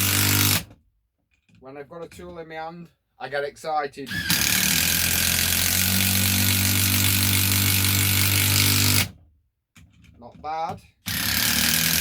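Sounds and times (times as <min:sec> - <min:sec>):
impact driver buzzing rattle: 0:00.0 - 0:00.7, 0:04.1 - 0:09.2, 0:11.0 - 0:12.0.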